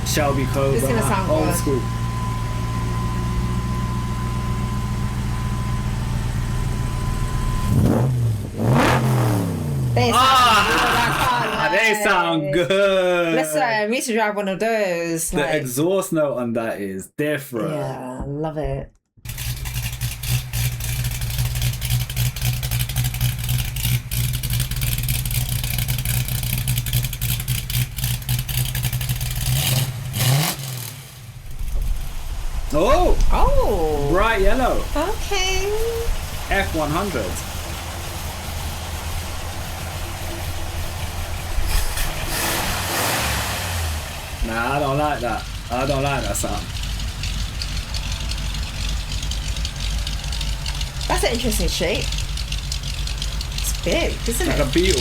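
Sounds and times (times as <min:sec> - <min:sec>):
car engine revving: 0:00.0 - 0:11.6, 0:19.3 - 0:55.0
car engine idling: 0:00.0 - 0:12.9, 0:19.2 - 0:55.0.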